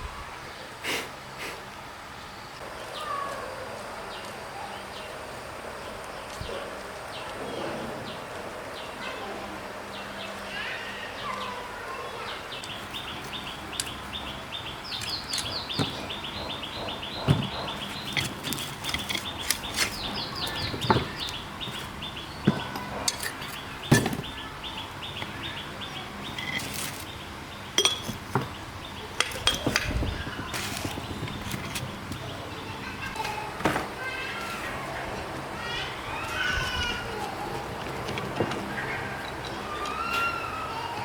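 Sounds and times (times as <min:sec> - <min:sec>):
bird chirping: 0:09.9 - 0:33.3
sharp knocks and clinks: 0:14.9 - 0:32.3.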